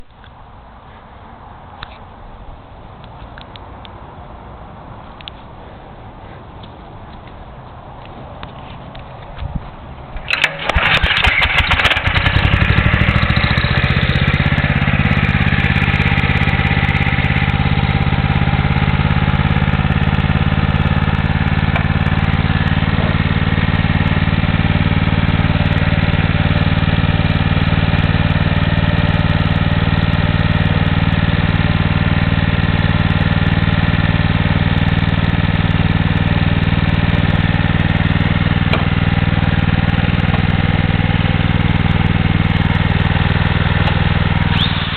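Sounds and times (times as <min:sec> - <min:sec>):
generator engine starting and running: 0:10.1 - 0:44.9.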